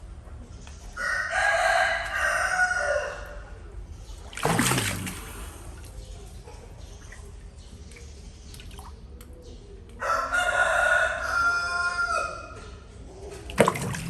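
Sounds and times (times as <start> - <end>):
rooster crowing: 1.0 - 3.4, 10.0 - 12.6.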